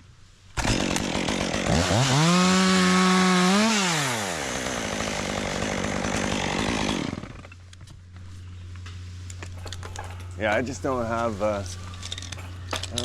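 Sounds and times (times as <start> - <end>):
chainsaw revving: 0.6 - 7.5.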